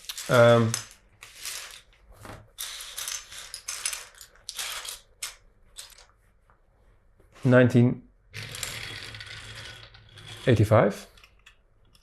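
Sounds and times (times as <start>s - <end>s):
plastic bricks clattering: 0.0s - 6.1s.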